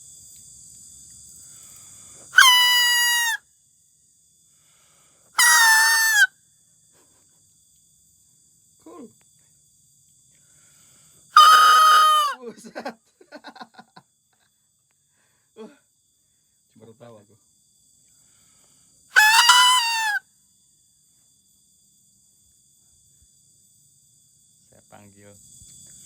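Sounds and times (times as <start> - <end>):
reedy grass whistle honk: 2.4 - 3.4, 5.4 - 6.3, 11.4 - 12.4, 19.2 - 20.2.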